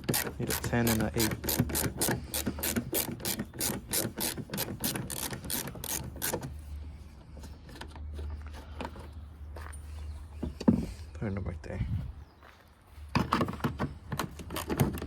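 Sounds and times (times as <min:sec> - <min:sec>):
ratchet wrench clicking: 0:00.0 - 0:06.5.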